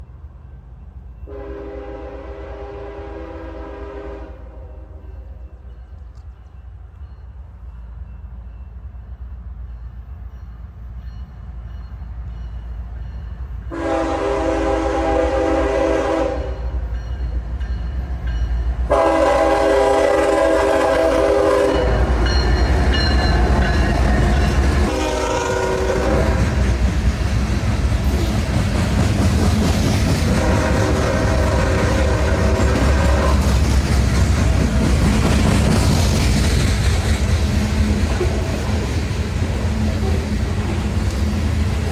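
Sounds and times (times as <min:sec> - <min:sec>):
diesel locomotive engine rumble: 0:00.0 - 0:41.9
train horn blasts: 0:01.3 - 0:05.5, 0:13.7 - 0:16.8, 0:18.9 - 0:22.4, 0:24.4 - 0:26.7, 0:30.2 - 0:33.6
wheels clattering on rail: 0:16.8 - 0:41.9.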